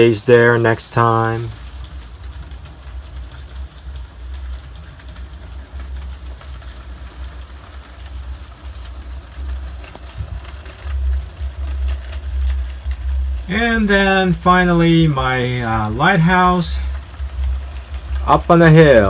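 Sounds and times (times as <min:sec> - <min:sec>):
model train motor rumble: 0:00.0 - 0:13.6
wheels clicking on rails: 0:00.0 - 0:19.0.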